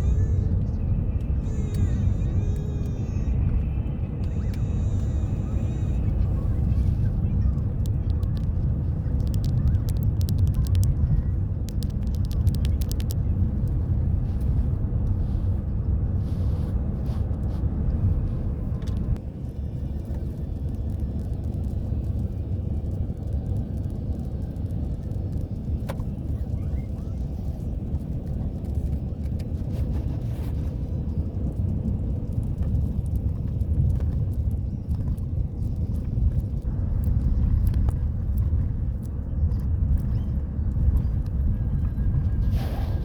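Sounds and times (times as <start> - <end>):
car tyres and engine rumble: 0.0 - 43.0
light ticks: 31.4 - 41.8.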